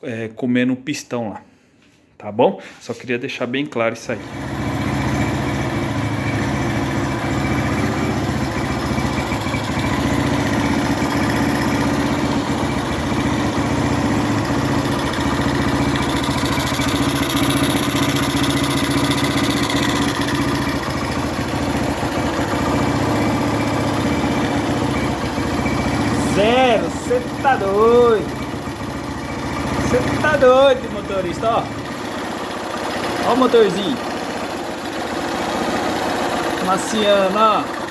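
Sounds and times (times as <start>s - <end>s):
motorcycle engine idling: 4.2s - 37.9s.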